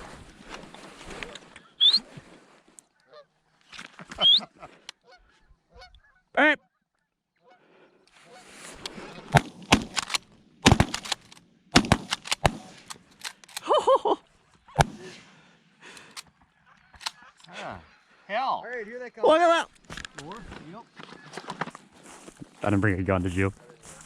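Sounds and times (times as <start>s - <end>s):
geese honking: 2.9s - 3.4s, 4.1s - 6.7s, 7.4s - 9.3s.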